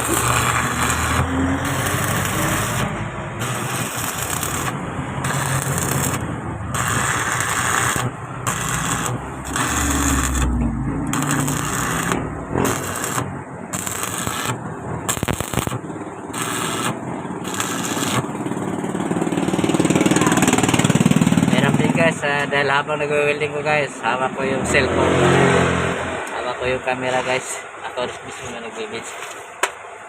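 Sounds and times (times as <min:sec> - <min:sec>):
arc welding crackling: 0:00.0 - 0:21.8.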